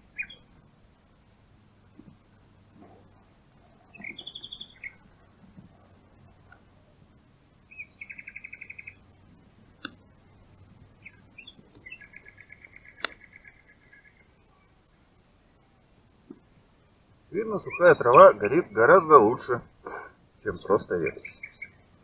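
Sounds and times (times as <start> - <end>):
songbird trilling: 0.1 - 0.5, 3.9 - 5.0, 7.7 - 10.0, 11.0 - 14.4, 17.4 - 19.0, 20.5 - 21.8
sharp clicks: 9.8 - 10.0, 12.9 - 13.4.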